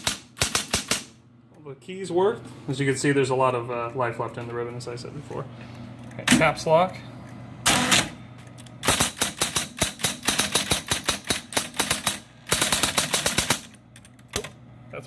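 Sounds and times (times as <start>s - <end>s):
electric typewriter key strikes: 0.0s - 1.0s, 8.8s - 14.5s
typewriter motor hum: 0.0s - 1.1s, 7.6s - 14.6s.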